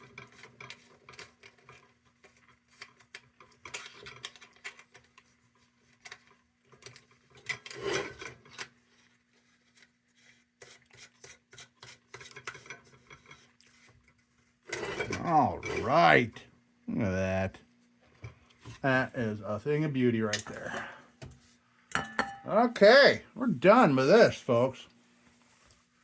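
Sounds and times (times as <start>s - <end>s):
metal lantern rubbing and scraping: 7.5s - 8.6s, 14.6s - 16.2s
faint steady hum: 13.6s - 26.0s.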